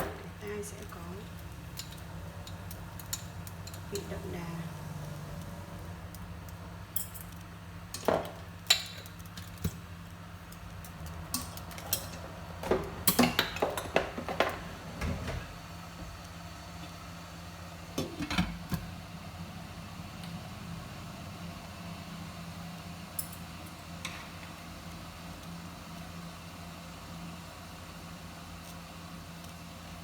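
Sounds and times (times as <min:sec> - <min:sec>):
utensils clinking against cooking pot: 0:01.7 - 0:04.2, 0:07.0 - 0:09.7, 0:10.9 - 0:14.6.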